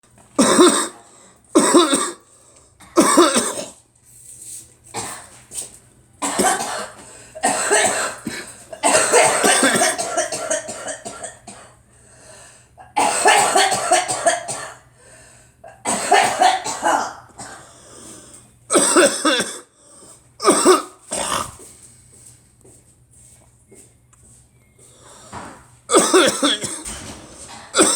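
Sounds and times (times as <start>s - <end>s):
person coughing: 0.4s - 3.8s, 5.0s - 5.4s, 6.2s - 11.8s, 12.8s - 14.9s, 15.7s - 17.8s, 18.7s - 19.7s, 20.4s - 21.7s, 25.3s - 27.0s, 27.7s - 27.9s.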